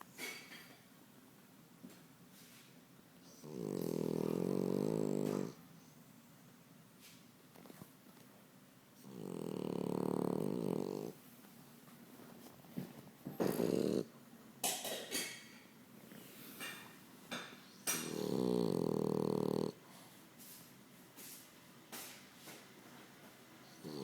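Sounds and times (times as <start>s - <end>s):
dog snoring: 3.2s - 5.6s, 9.0s - 11.2s, 13.3s - 14.1s, 17.9s - 19.8s, 23.7s - 24.0s.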